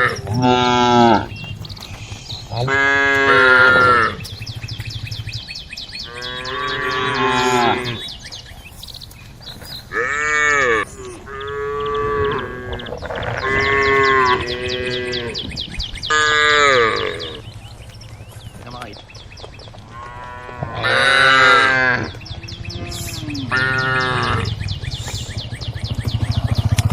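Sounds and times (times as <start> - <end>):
cattle mooing: 0.0 - 1.4, 2.5 - 4.3, 6.0 - 8.1, 9.9 - 17.5, 19.9 - 24.6.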